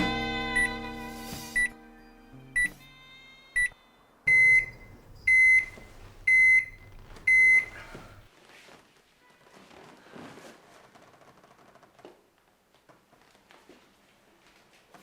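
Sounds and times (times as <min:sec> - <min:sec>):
microwave oven beeping: 0:00.6 - 0:00.8, 0:04.3 - 0:08.2
microwave low hum: 0:04.3 - 0:08.2.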